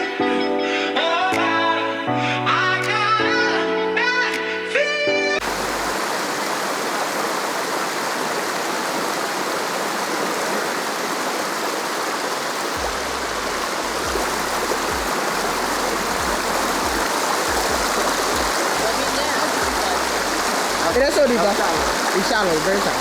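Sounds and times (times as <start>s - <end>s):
water rushing: 5.4s - 23.0s
low rumbles: 12.8s - 23.0s.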